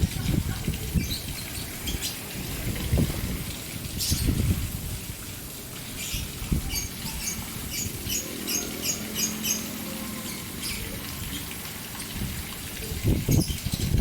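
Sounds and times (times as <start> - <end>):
birds chirping: 0.0 - 3.0, 3.8 - 4.5, 5.8 - 12.2
fountain water splashing: 0.0 - 14.0.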